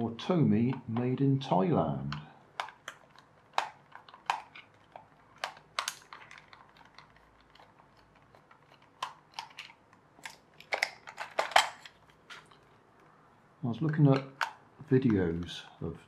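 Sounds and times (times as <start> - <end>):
plastic toy parts clicking: 2.0 - 12.7, 13.9 - 15.6.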